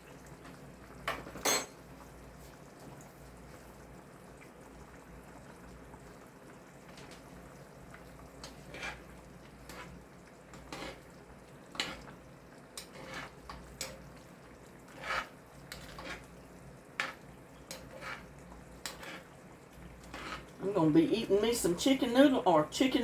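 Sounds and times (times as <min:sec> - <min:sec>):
spoon clinking in a pot: 0:01.1 - 0:01.8.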